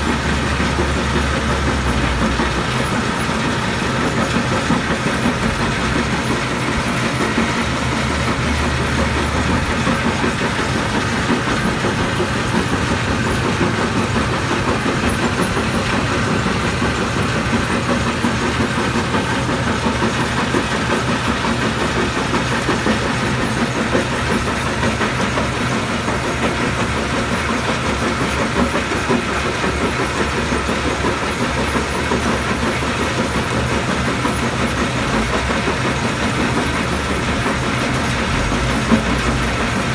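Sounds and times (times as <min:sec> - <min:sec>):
stone crusher running: 0:00.0 - 0:39.9.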